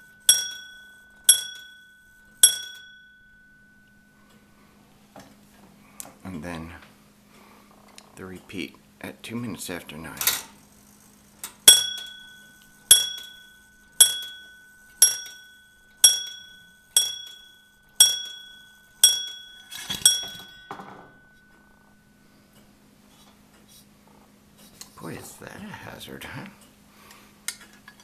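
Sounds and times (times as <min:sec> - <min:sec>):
clock bell striking: 0:00.0 - 0:04.3, 0:11.7 - 0:22.2.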